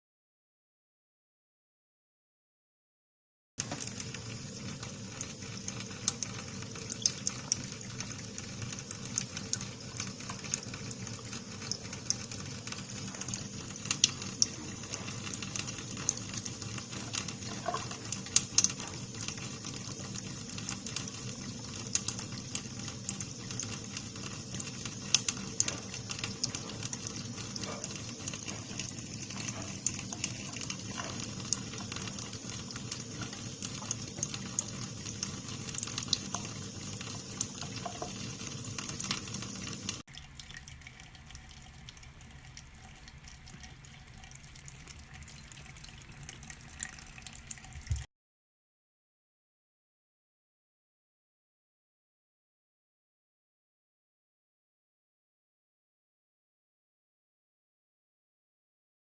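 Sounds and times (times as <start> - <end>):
water tap running: 3.6 - 48.1
water ticks and splats: 3.6 - 48.1.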